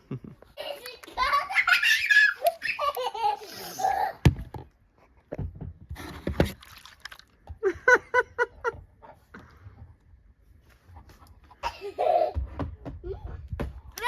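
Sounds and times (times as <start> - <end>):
child laughing: 0.5 - 4.3, 11.6 - 13.4.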